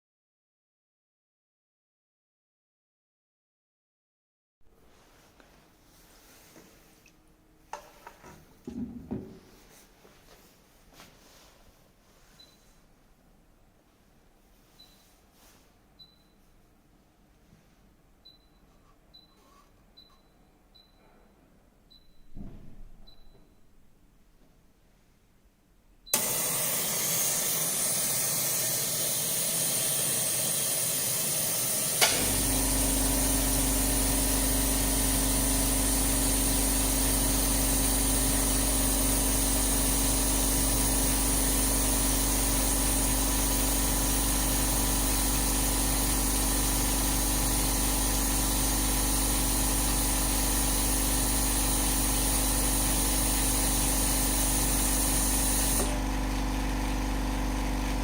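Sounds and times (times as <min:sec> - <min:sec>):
steady air hiss: 0:26.2 - 0:32.3.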